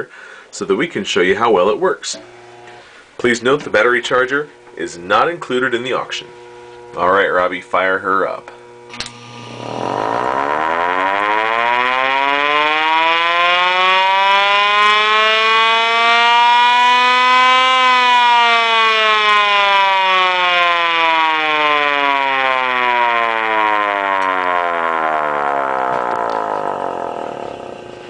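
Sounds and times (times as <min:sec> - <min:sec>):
fire engine siren wailing: 0:09.6 - 0:28.0.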